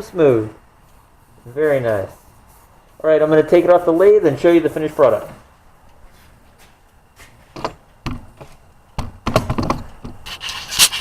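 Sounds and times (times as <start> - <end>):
scraping rub: 0.9 - 5.4, 10.2 - 11.0
wood and metal knocks: 7.5 - 10.2.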